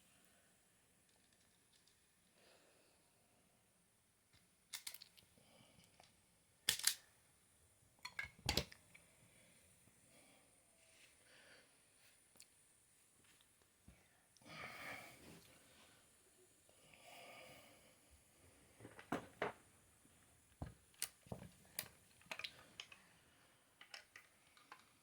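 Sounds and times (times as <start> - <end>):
plastic parts clicking and knocking: 4.7 - 5.2, 5.9 - 7.0, 8.0 - 8.8, 18.8 - 19.6, 20.6 - 23.0, 23.8 - 25.0.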